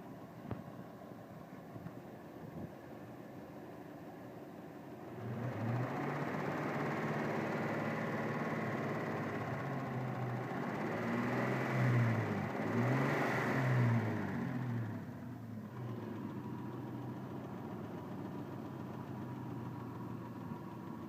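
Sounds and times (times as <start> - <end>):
engine running and revving: 5.1 - 20.0
engine knocking: 5.3 - 13.0, 15.8 - 21.0.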